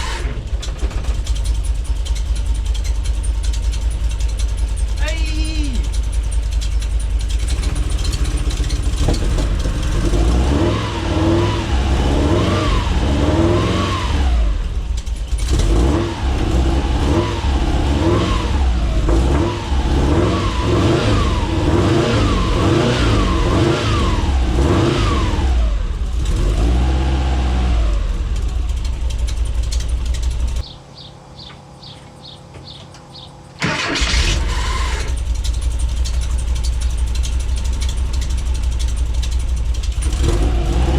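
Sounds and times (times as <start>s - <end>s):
car engine revving: 0.0s - 30.7s, 33.2s - 40.9s.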